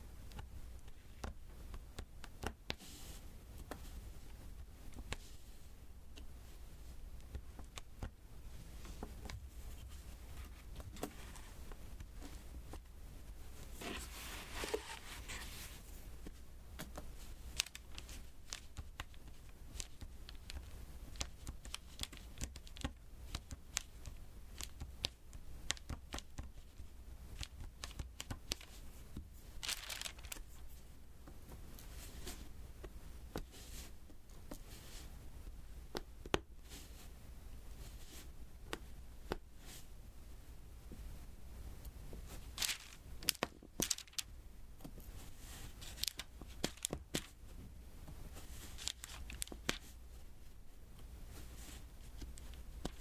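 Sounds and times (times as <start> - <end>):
crinkly rustle: 28.5 - 30.8, 42.3 - 44.3, 45.0 - 47.4, 48.4 - 50.2.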